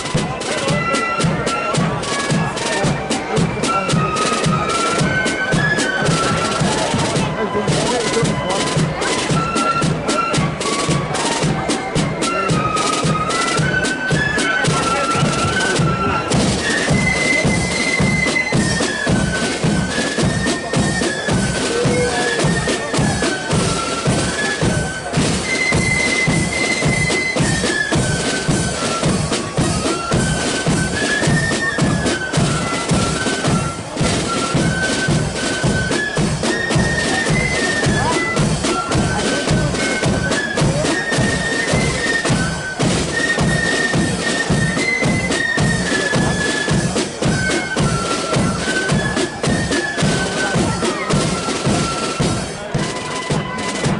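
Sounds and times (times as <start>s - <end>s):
bass and snare drums march beat: 0.0s - 53.9s
marching flute band: 0.0s - 53.9s.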